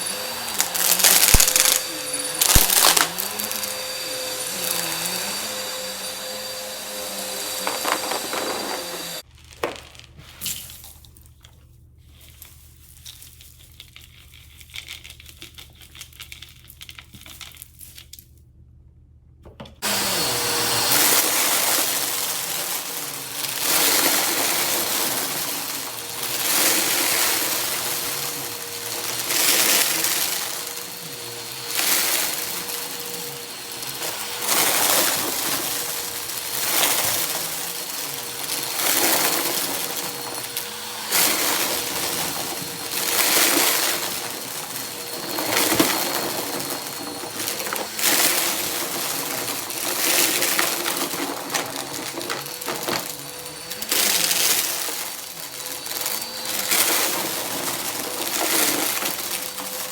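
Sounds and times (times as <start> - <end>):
vacuum cleaner motor whine: 0.0 - 9.8, 19.8 - 59.9
vacuum crunching up confetti: 0.0 - 11.5, 19.8 - 59.9
faint crackles: 0.1 - 6.5.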